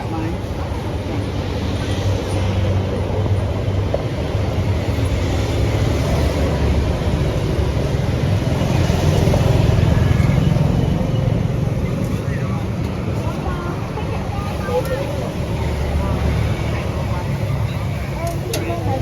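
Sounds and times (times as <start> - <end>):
vehicle engine and road noise: 0.0 - 19.0.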